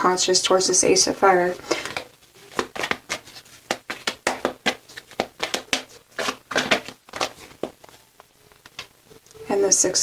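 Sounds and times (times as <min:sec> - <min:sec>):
cards being shuffled: 0:01.6 - 0:08.0.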